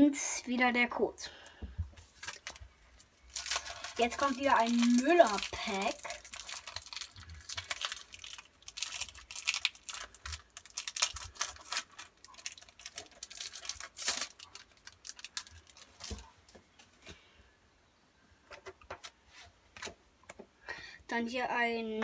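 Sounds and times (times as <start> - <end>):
foil wrapper crinkling and tearing: 2.0 - 16.3.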